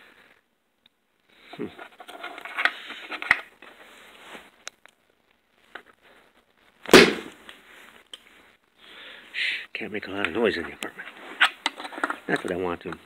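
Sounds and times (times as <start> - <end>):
plastic parts scraping and rattling: 1.5 - 3.7, 10.2 - 13.0.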